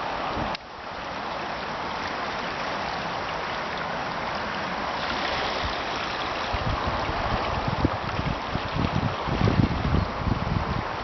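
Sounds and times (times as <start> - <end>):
flowing river water: 0.0 - 11.0
wind buffeting microphone: 5.2 - 11.0.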